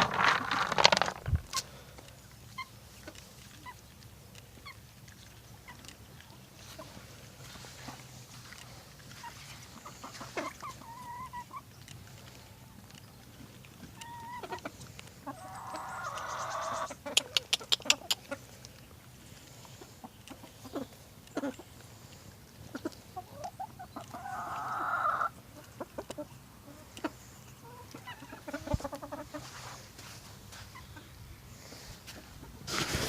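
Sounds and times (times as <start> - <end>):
chickens clucking: 0.0 - 33.0
raspy chicken calls: 14.0 - 18.4, 22.7 - 25.3.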